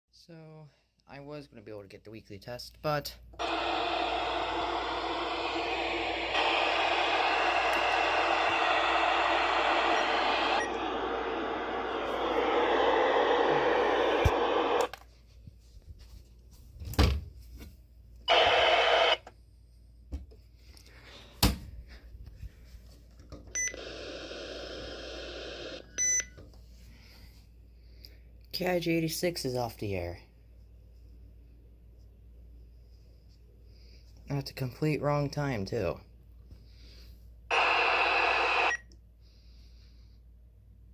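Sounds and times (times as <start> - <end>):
radio static hiss: 3.4 - 14.9, 18.3 - 19.2, 23.8 - 25.9, 37.5 - 38.8
steady tone: 3.4 - 14.9, 37.5 - 38.8.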